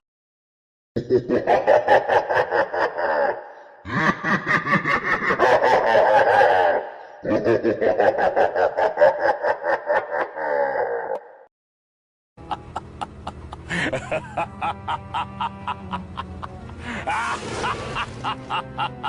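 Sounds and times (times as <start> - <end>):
evil demon laugh: 1.0 - 11.4, 12.4 - 19.0
breathy vocal swells: 16.7 - 18.4.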